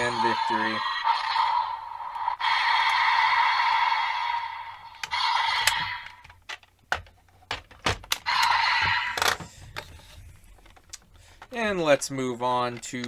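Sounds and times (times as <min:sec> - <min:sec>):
plastic toy clicks and knocks: 0:05.0 - 0:13.0.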